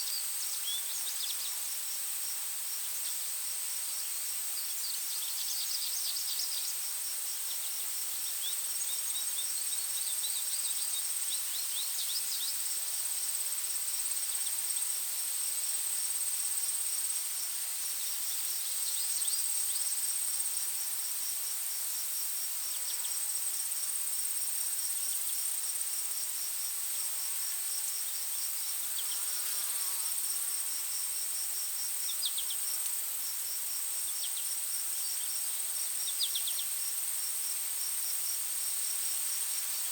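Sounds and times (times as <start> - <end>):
insects trilling: 21.9 - 39.9.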